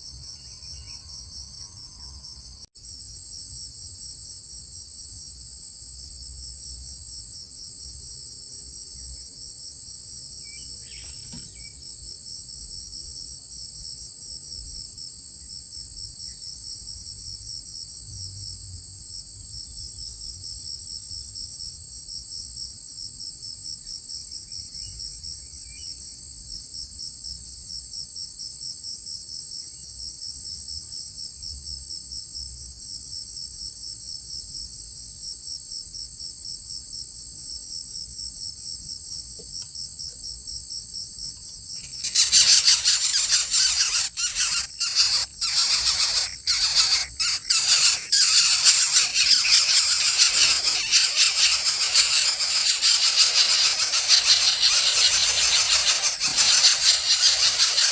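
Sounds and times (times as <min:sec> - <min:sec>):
insects trilling: 0:00.0 - 0:05.3, 0:06.0 - 0:18.6, 0:39.1 - 0:57.9.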